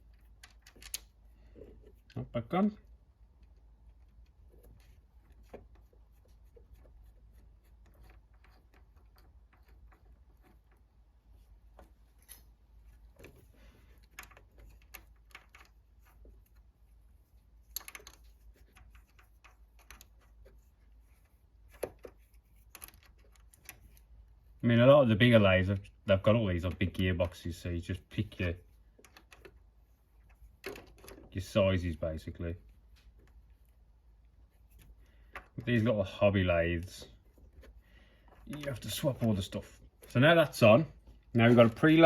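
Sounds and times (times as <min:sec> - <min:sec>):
metal parts clicking and knocking: 0:00.0 - 0:02.2, 0:06.7 - 0:10.9, 0:11.8 - 0:16.7, 0:17.6 - 0:24.2, 0:28.2 - 0:31.4.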